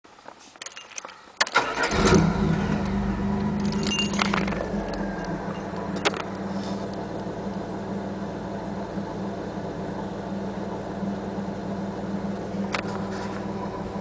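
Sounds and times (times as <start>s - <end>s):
car engine starting and idling: 1.5s - 14.0s
engine ticking: 1.6s - 8.4s.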